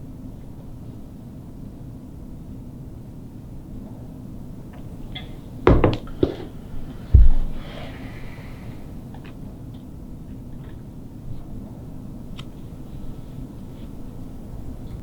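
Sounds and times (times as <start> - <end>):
steady low hum: 0.0 - 15.0
sharp knocks: 5.2 - 7.6
heavy low thump: 5.7 - 7.7.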